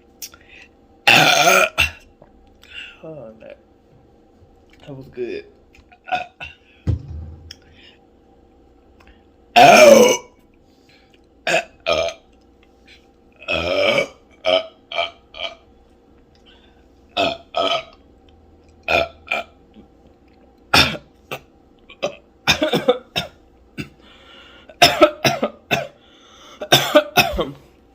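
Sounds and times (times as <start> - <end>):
person burping loudly: 1.1 - 2.0, 9.6 - 10.4, 11.5 - 12.2, 13.4 - 15.6, 17.2 - 18.0.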